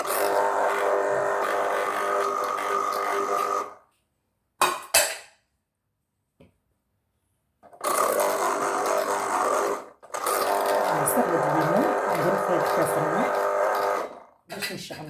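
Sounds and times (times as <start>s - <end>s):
juicer motor whining: 0.0s - 3.9s, 7.7s - 14.5s.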